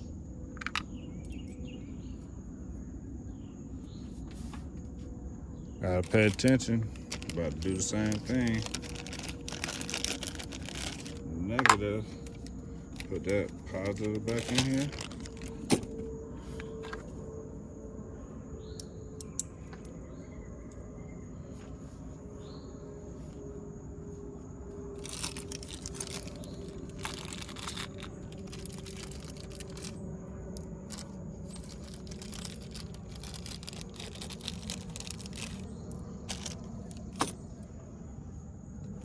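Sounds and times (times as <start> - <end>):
low background hum: 0.0 - 39.0
rustling and scraping: 3.9 - 5.1, 5.8 - 17.4, 25.0 - 37.6.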